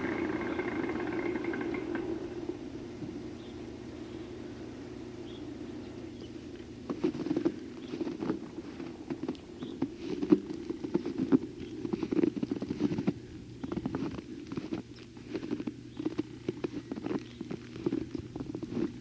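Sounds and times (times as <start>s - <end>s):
steady low hum: 0.0s - 19.0s
footsteps crunching through snow: 6.2s - 19.0s.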